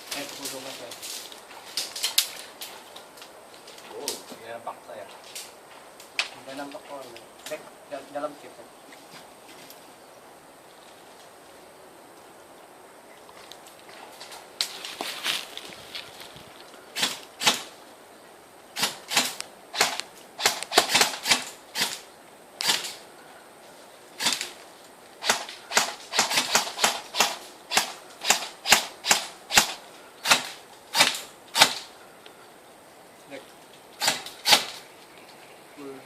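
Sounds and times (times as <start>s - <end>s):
airsoft guns firing: 17.0s - 17.7s, 18.8s - 23.0s, 24.2s - 24.5s, 25.2s - 31.9s, 34.0s - 34.8s.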